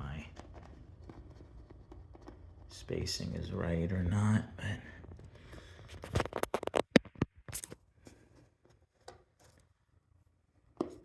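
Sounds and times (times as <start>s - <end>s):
wire scratching plastic track: 0.0s - 3.9s.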